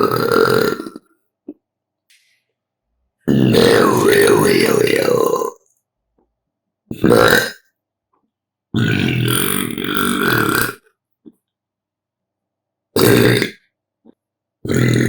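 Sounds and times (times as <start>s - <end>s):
person burping: 0.0s - 1.6s, 3.3s - 5.6s, 6.9s - 7.6s, 8.8s - 10.8s, 13.0s - 13.6s, 14.6s - 15.0s.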